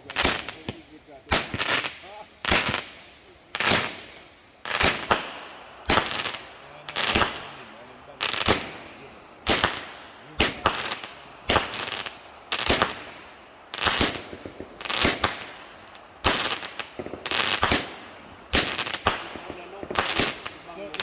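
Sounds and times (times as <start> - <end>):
fireworks bangs and crackle: 0.0 - 21.0.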